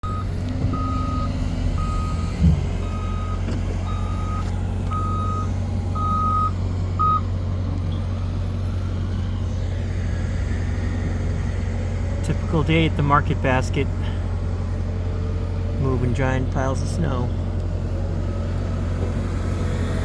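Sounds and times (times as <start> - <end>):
backup alarm beeping: 0.0 - 7.2
diesel engine drone: 0.0 - 20.0.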